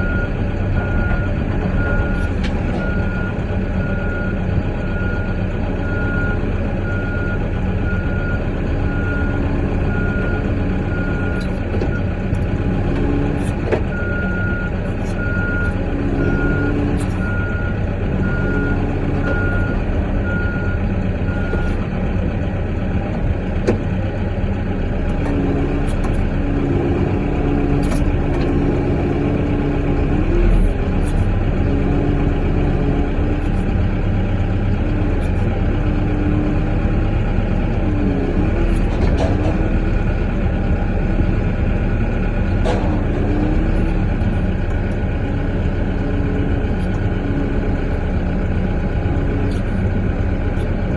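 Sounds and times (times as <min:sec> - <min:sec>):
diesel engine running: 0:00.0 - 0:50.9
reverse alarm beeping: 0:13.9 - 0:21.7.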